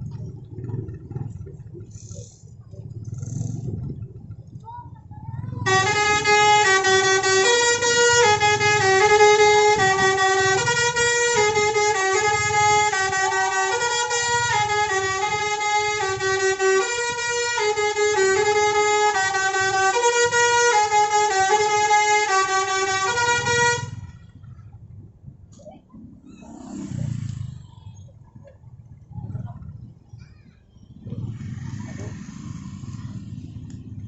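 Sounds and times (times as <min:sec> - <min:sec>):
bus musical horn melody: 0:05.6 - 0:24.2.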